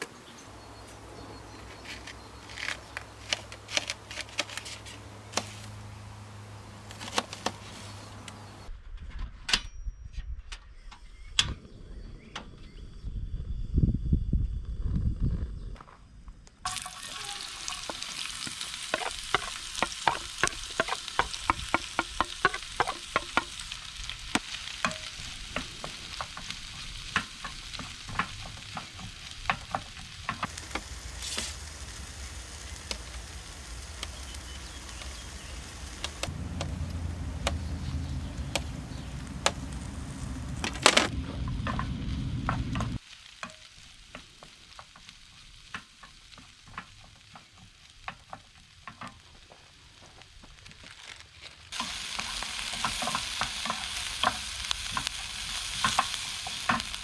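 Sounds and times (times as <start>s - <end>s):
utensil tapping a pan: 16.7s - 26.6s, 27.2s - 40.8s, 51.8s - 57.0s
food sizzling in a pan: 16.7s - 57.0s
low rumble: 30.5s - 43.0s.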